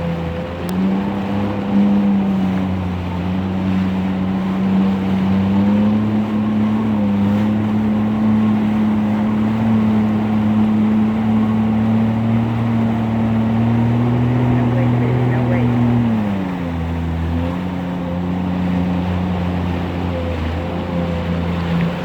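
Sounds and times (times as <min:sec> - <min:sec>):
engine running: 0:00.0 - 0:22.0.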